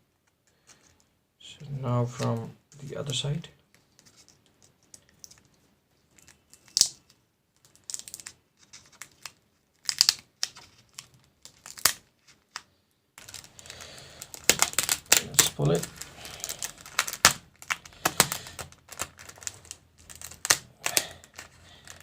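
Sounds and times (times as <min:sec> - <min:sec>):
plastic film crinkling: 0:06.2 - 0:22.0.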